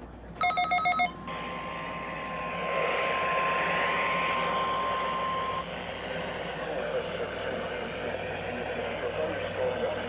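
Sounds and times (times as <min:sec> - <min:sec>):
steady alarm tone: 0:00.4 - 0:07.4.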